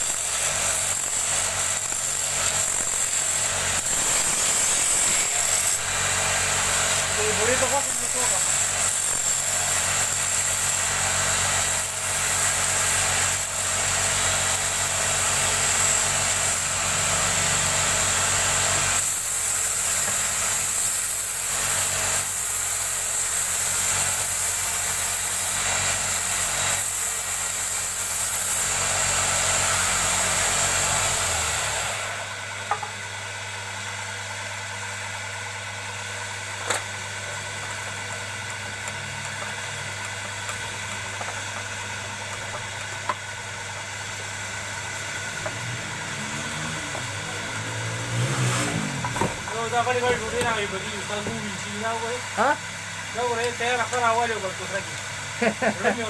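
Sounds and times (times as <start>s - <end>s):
turning tool scraping wood: 0.0s - 10.8s, 44.9s - 52.5s
lathe motor hum: 0.0s - 56.0s.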